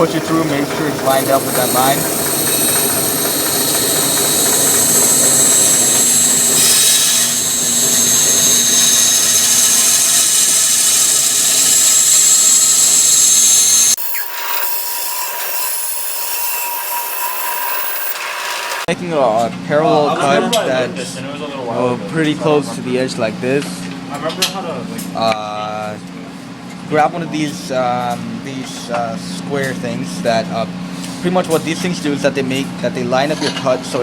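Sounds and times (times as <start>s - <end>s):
bandsaw cutting: 0.0s - 18.9s
hum with held tone: 0.0s - 18.9s.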